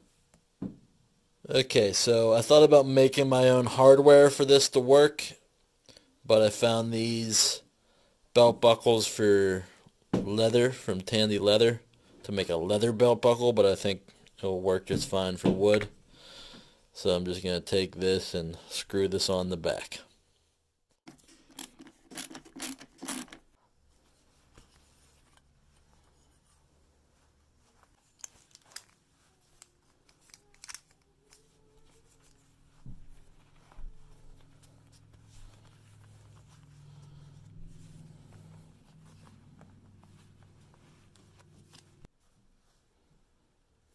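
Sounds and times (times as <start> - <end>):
metal buckle hardware clicking: 30.0 - 31.4.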